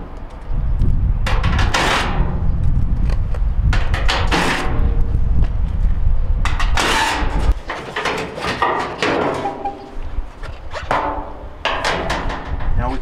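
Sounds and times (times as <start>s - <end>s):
sheet metal scraping and rattling: 1.3s - 2.4s, 3.8s - 5.0s, 6.4s - 13.0s
low rumble: 4.6s - 7.6s.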